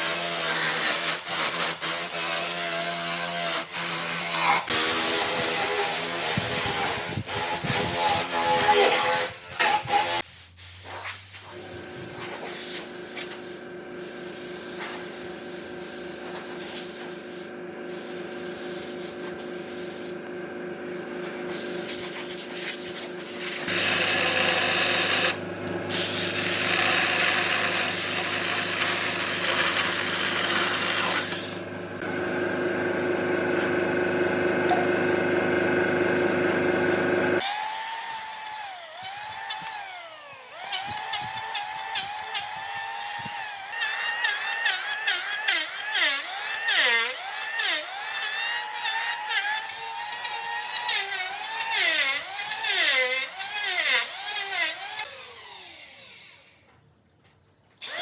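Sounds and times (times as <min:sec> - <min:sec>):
electric power tool cutting wood: 0:00.0 - 0:10.3, 0:23.0 - 0:56.6.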